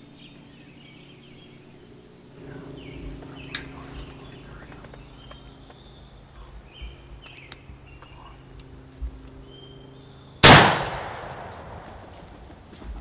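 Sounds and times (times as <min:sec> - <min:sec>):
small birds chirping: 0:00.0 - 0:10.6
gunshot blast with echo: 0:10.4 - 0:12.1.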